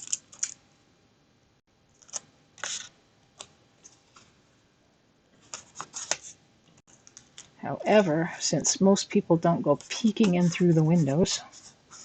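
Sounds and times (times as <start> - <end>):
cardstock and tape crinkling: 0.0 - 0.6.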